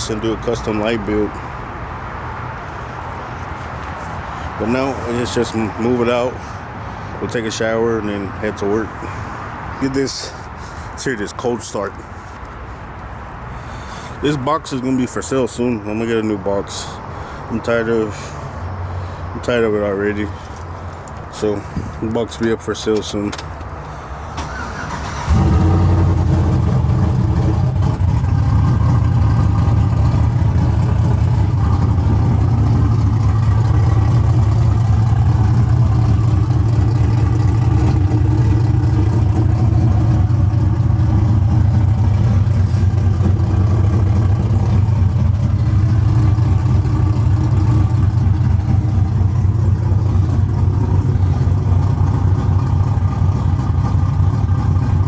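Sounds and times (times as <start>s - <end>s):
truck engine idling: 0.0s - 55.0s.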